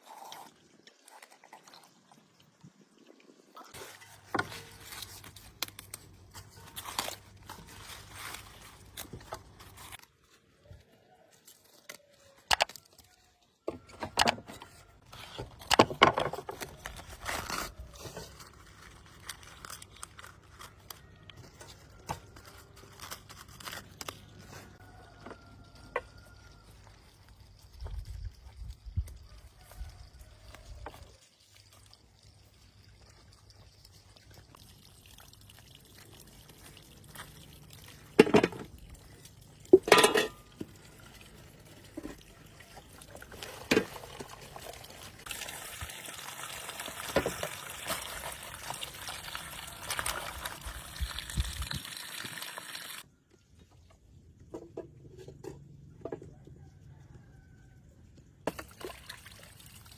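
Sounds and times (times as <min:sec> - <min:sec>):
water pouring and trickling: 0:00.0 - 0:55.5, 0:56.6 - 0:59.9.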